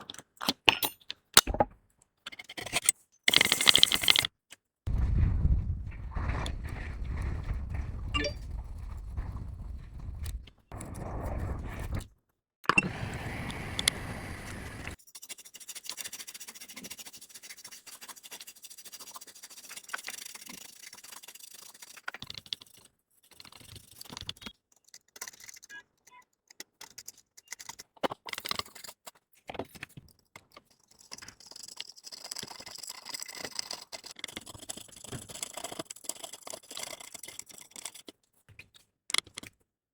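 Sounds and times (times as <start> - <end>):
metal tools clicking and scraping: 0.1 - 1.6.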